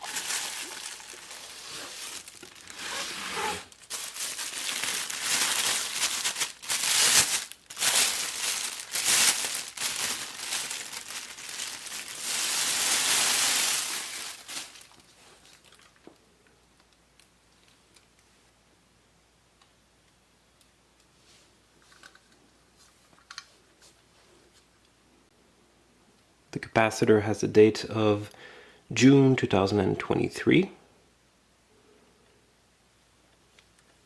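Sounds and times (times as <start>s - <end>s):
packaging crinkling and rustling: 0.0s - 16.2s.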